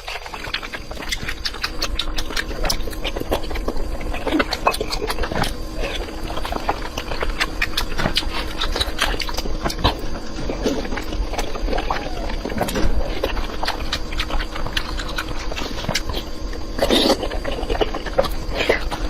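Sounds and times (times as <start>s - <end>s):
low mouth noises: 0.0s - 19.0s
wet chewing and smacking: 0.0s - 19.0s.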